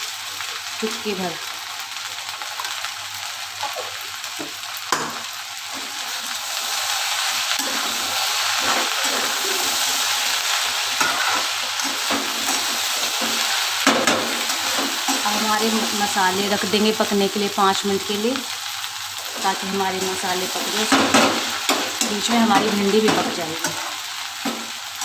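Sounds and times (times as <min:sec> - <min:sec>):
food sizzling in oil: 0:00.0 - 0:25.0
spatula scraping pan: 0:07.5 - 0:16.0.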